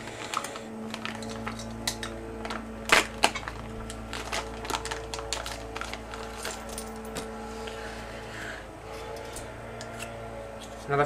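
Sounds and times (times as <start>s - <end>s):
packaging snapping: 0.0s - 7.8s
packaging crinkling: 0.0s - 7.9s.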